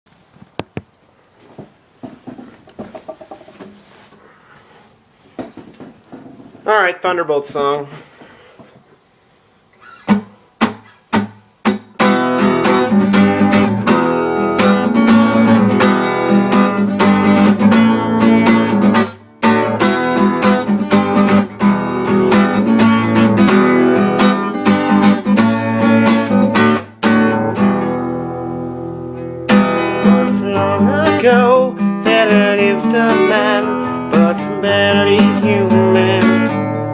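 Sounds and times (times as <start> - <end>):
acoustic guitar strumming: 9.8 - 36.9.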